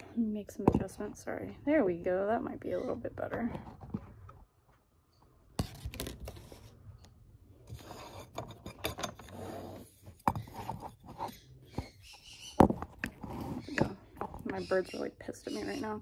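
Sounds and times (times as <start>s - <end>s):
scraping and rustling on desk: 7.6s - 12.0s, 12.7s - 14.4s.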